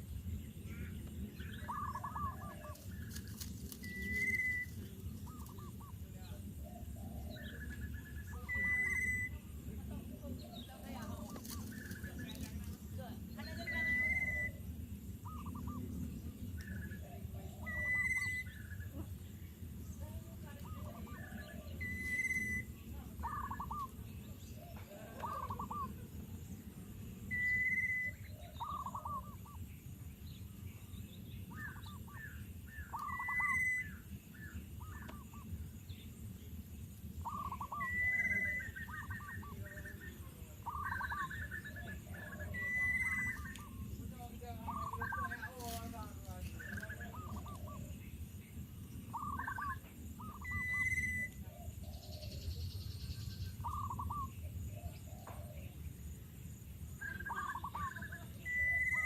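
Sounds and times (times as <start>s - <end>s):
low background rumble: 0.0s - 58.4s
bird chirps: 0.0s - 59.0s.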